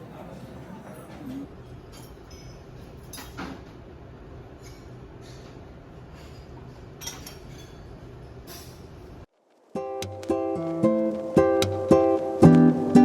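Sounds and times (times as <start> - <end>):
light clicks and clinks: 1.0 - 3.5.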